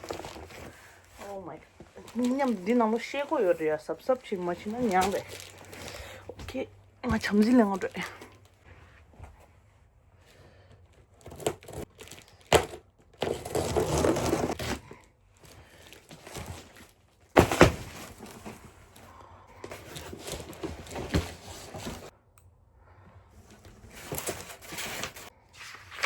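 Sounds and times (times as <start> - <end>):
packaging rustling and crinkling: 0.0 - 8.6, 11.2 - 22.1
items knocking down on surface: 17.4 - 18.6.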